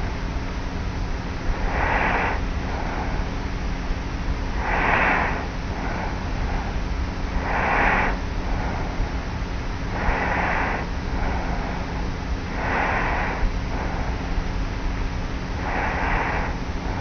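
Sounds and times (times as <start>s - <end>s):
tape recorder hum and hiss: 0.0s - 17.0s
woman snoring: 7.4s - 8.8s, 10.0s - 11.8s, 12.6s - 13.4s, 15.6s - 17.0s.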